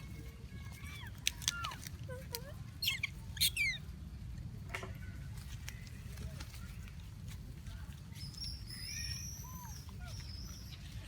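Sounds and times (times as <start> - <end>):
high squeaks and chirps: 2.8 - 3.8.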